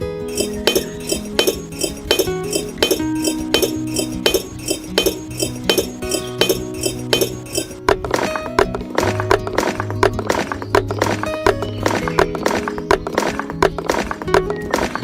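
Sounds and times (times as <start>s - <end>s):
clinking bell-like beat: 0.3s - 7.8s.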